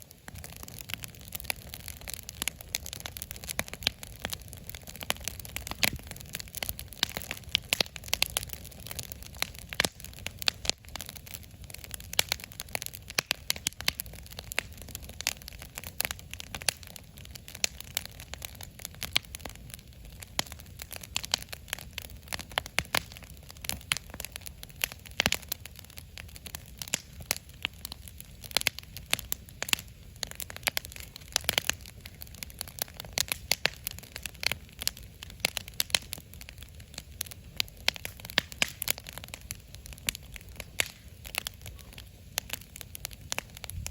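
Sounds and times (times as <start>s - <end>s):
wood fire crackling and popping: 0.0s - 43.9s
low steady rumble: 43.6s - 43.9s.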